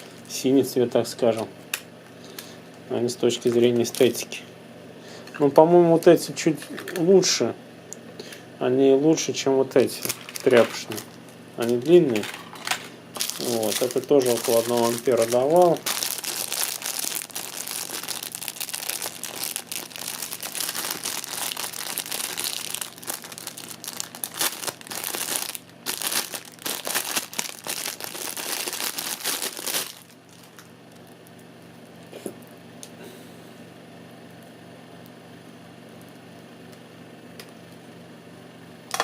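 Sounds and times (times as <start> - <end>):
plastic packaging crinkling: 0.0 - 0.5, 3.3 - 4.2, 9.8 - 32.1.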